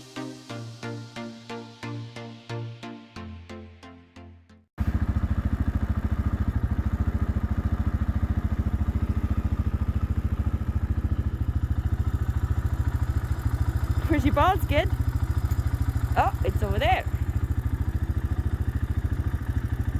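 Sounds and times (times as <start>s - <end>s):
engine idling: 4.8s - 19.9s.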